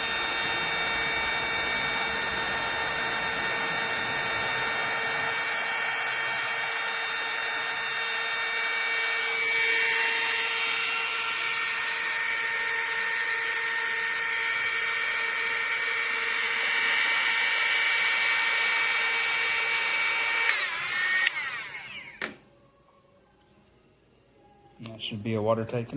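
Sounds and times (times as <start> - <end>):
rush of hot air: 0.0 - 6.7
heat gun fan whining: 0.0 - 22.5.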